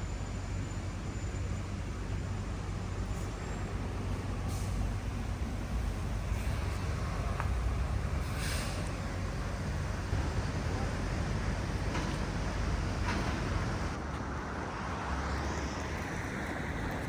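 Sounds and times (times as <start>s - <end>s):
traffic rumble: 0.0s - 17.0s
short hisses: 8.2s - 8.9s.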